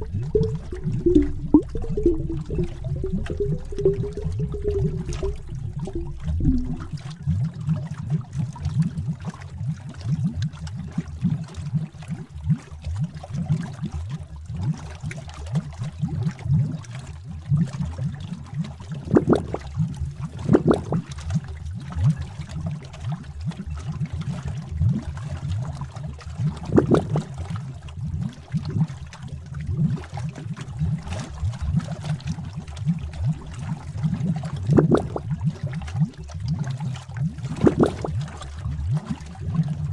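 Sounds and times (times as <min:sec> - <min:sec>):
bubbles popping: 0:00.0 - 0:09.2, 0:19.0 - 0:21.3, 0:26.4 - 0:27.5, 0:29.7 - 0:39.9
thick liquid bubbling: 0:00.0 - 0:39.9.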